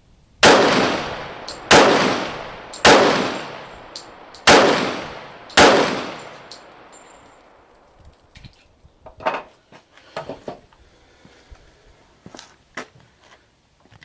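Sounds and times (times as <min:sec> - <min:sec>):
pistol shot with echo: 0:00.4 - 0:07.0.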